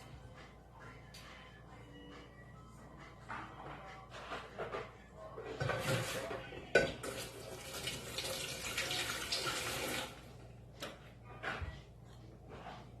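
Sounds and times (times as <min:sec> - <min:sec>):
kitchen tap running: 0:06.8 - 0:10.2.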